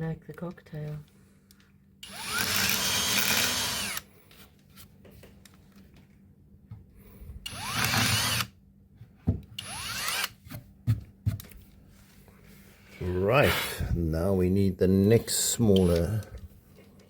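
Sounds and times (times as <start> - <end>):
power drill boring into wood: 2.0 - 4.0, 7.5 - 8.5, 9.6 - 10.4.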